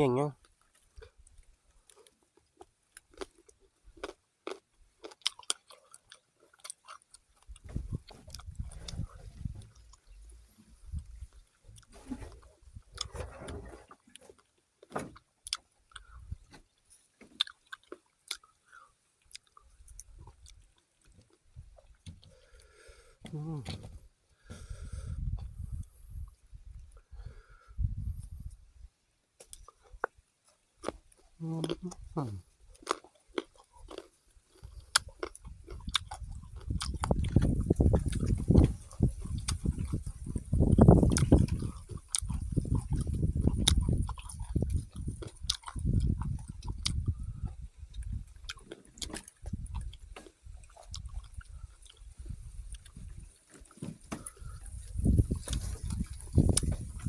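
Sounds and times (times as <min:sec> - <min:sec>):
person chewing fruit: 0:00.4 - 0:28.6, 0:29.4 - 0:57.0
mouth clicks: 0:30.8 - 0:34.0, 0:34.6 - 0:47.2.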